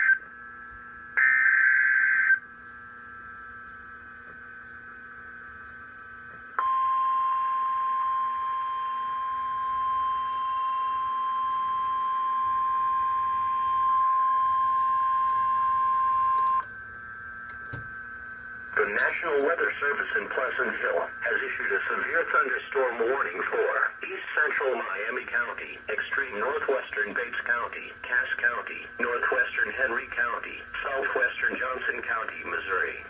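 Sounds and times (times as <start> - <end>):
steady alarm tone: 0.0 - 33.0
faint radio hiss: 18.7 - 33.0.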